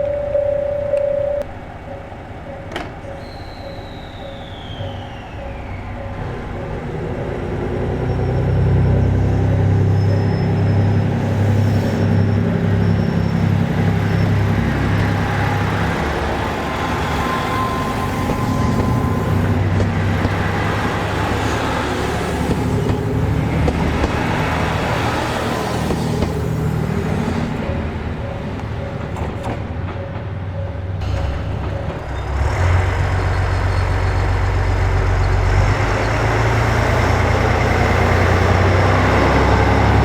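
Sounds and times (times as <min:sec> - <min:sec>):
diesel train passing: 0:00.0 - 0:40.0.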